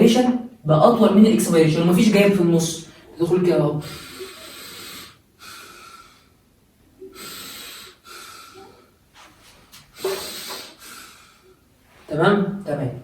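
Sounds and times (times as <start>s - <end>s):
man breathing through mouth: 3.8s - 11.7s.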